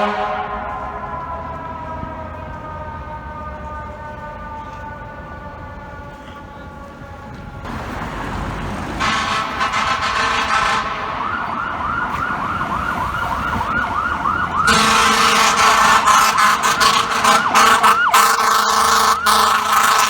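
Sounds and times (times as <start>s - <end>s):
air horn blasts: 0.0s - 1.2s, 9.0s - 11.6s, 14.6s - 20.0s
electronic siren yelping: 10.0s - 20.0s.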